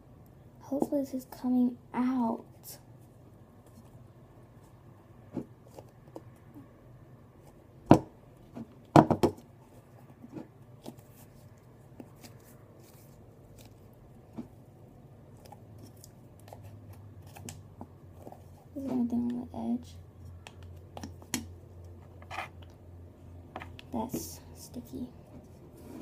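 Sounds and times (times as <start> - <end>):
small clicks and taps: 20.3 - 22.0.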